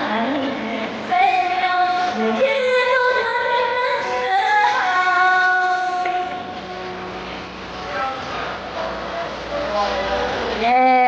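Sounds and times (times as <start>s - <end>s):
woman singing long held notes: 0.0s - 6.5s.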